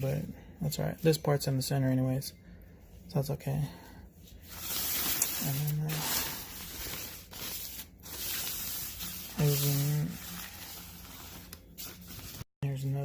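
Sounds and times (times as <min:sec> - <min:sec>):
tarp rustling and crinkling: 0:04.4 - 0:12.4.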